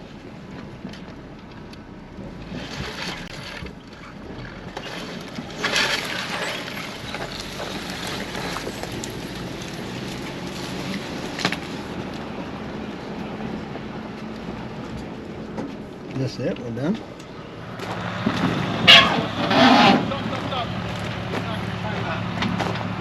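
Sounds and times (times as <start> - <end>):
engine rumbling low: 0.0 - 23.0
tyres crunching on stone: 2.6 - 12.2.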